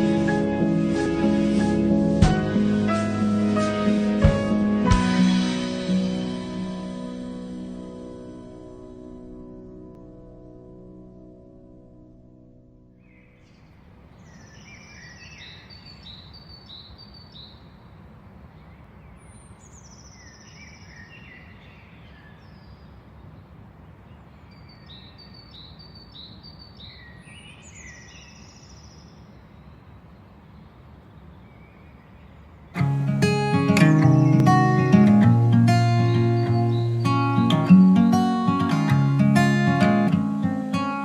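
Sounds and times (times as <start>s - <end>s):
songbird chirping: 0.0s - 41.0s.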